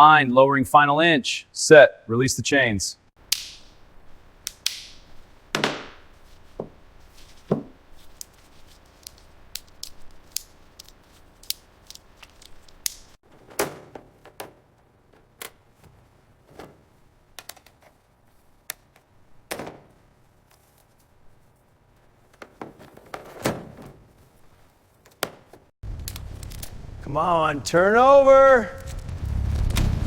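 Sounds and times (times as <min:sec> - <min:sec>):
heavier knocks and clunks: 0:07.4 - 0:07.8.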